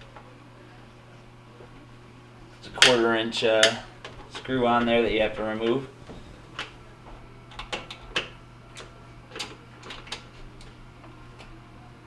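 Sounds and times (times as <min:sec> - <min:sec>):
steady low hum: 0:02.3 - 0:09.4.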